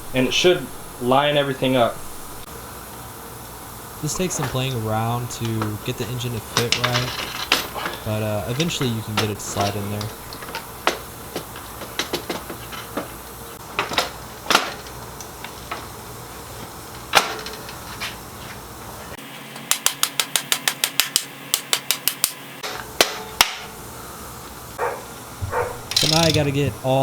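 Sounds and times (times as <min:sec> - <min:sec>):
metal knocks and clunks: 0:24.8 - 0:26.8.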